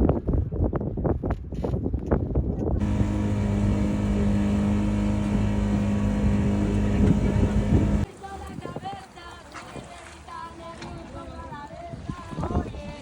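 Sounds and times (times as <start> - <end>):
wind buffeting microphone: 0.0 - 8.9
steady engine drone: 2.8 - 8.1.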